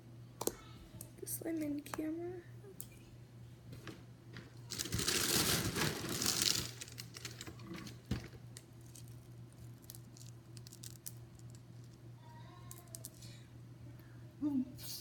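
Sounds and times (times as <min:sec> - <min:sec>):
snack packaging crinkling: 0:04.6 - 0:12.0.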